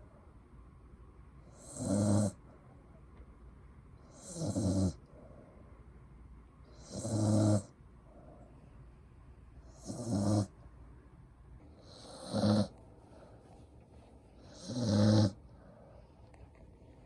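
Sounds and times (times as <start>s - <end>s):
dog snoring: 1.4s - 2.4s, 4.0s - 5.1s, 6.7s - 7.7s, 9.6s - 10.6s, 11.8s - 12.8s, 14.4s - 15.4s.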